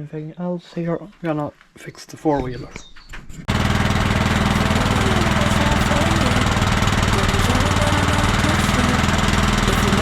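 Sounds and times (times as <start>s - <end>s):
small engine running: 3.5s - 10.0s.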